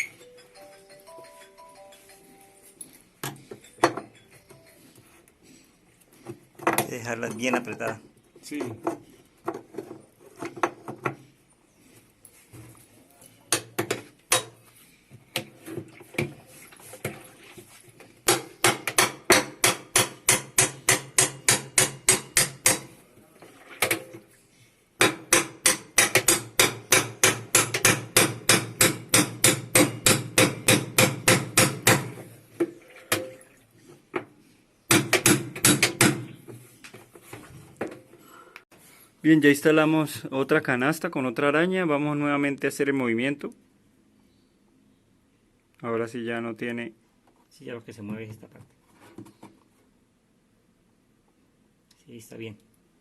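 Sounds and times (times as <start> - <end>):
hammer striking: 18.3 - 22.9, 25.0 - 32.2, 34.9 - 36.3.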